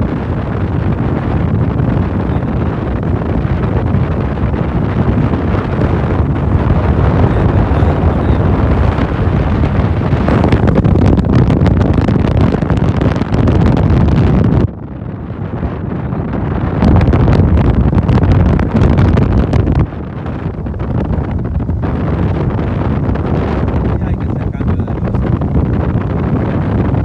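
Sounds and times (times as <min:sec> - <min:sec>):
wind buffeting microphone: 0:00.0 - 0:27.0.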